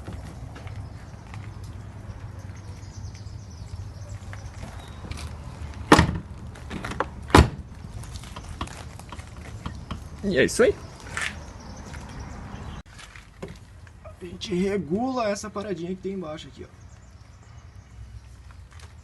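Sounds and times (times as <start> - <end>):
car door thudding shut: 5.9 - 7.6.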